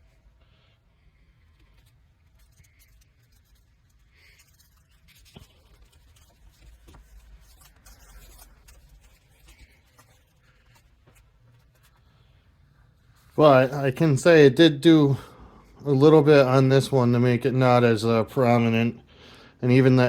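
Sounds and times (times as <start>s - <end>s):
faint rubbing and handling: 0.0s - 20.0s.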